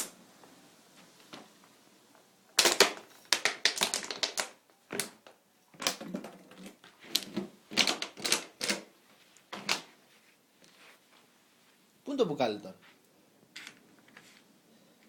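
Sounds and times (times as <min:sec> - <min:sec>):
plastic bottle crackling: 0:02.6 - 0:08.9.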